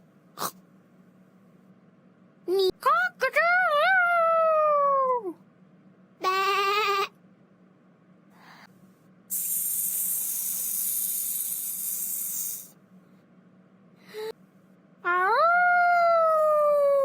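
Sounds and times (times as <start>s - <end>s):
person hissing: 9.3s - 12.8s.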